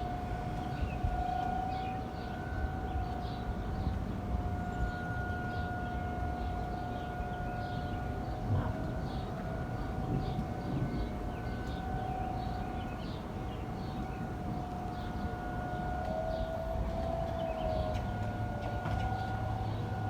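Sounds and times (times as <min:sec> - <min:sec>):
warning siren steady tone: 0:00.0 - 0:20.0.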